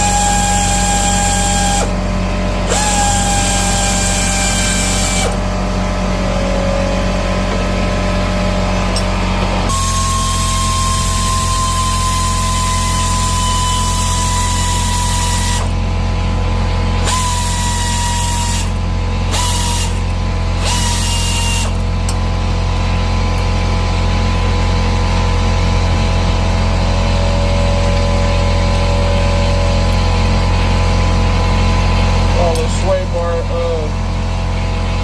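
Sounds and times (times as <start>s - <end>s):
power tool spinning bolt: 0.0s - 1.9s, 2.7s - 5.4s, 9.7s - 15.8s, 17.0s - 21.8s.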